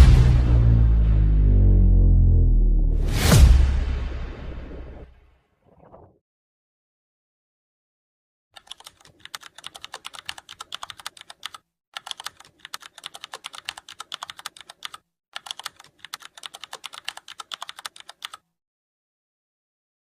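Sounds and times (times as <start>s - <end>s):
fast typing on keyboard: 8.6s - 18.5s.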